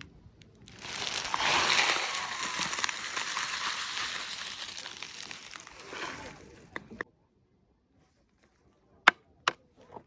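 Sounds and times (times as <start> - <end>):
crackling hiss: 0.0 - 6.6.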